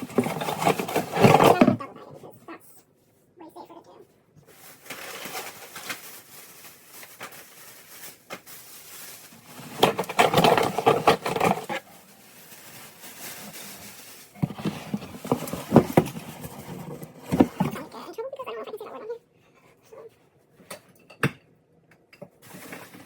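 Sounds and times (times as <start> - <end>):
kitchen items clattering: 0.0 - 1.9, 4.5 - 18.0, 22.2 - 23.0.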